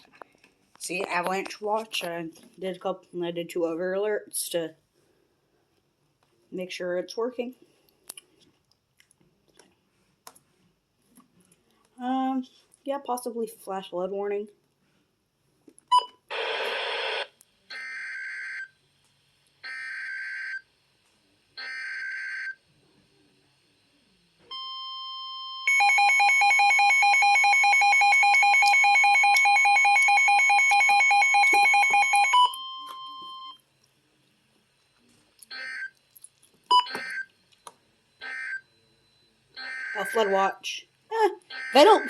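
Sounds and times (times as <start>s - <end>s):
steady alert tone: 41.5s - 42.0s.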